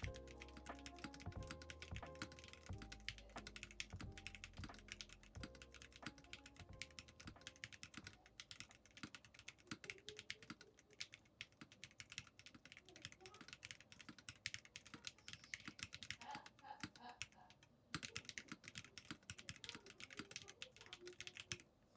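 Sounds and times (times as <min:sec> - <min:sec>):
soft background music: 0:00.0 - 0:08.6
mechanical keyboard typing: 0:00.0 - 0:21.6.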